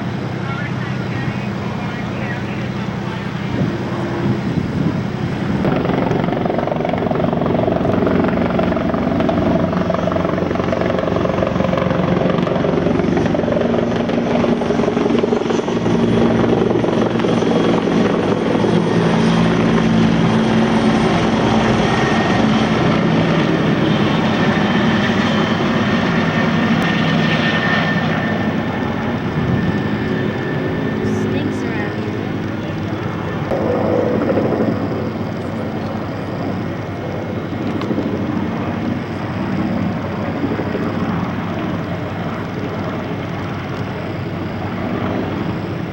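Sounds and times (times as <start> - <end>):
helicopter rotor and engine: 0.0 - 45.9.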